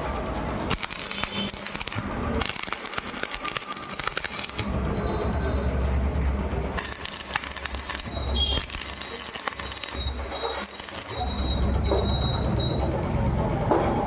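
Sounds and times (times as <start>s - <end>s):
welding machine hum: 0.6s - 4.8s, 6.8s - 11.5s
welding arc crackling and hissing: 0.7s - 4.7s, 6.8s - 11.3s.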